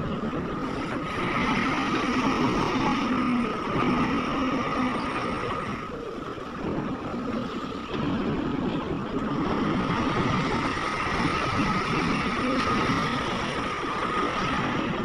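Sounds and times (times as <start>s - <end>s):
machinery high whine: 0.0s - 7.3s, 7.9s - 15.0s.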